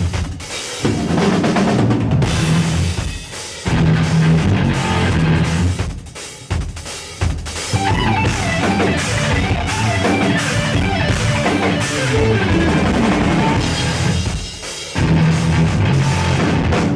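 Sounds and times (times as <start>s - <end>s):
drum kit: 0.0s - 16.9s
bass guitar: 1.9s - 3.0s, 3.7s - 5.8s, 7.7s - 14.4s, 15.0s - 16.9s
fast electric guitar lead: 3.7s - 5.8s, 7.7s - 16.9s.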